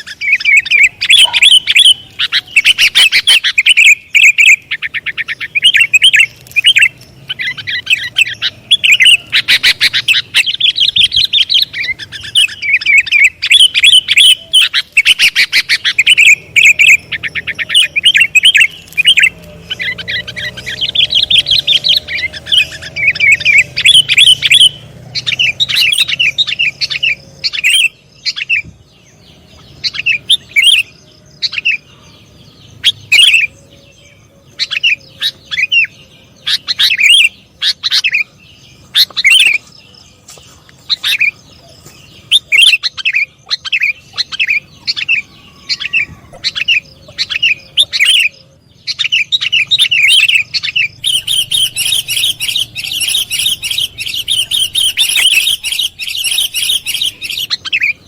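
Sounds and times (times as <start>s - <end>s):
bird chirping and chattering: 0.0s - 58.0s.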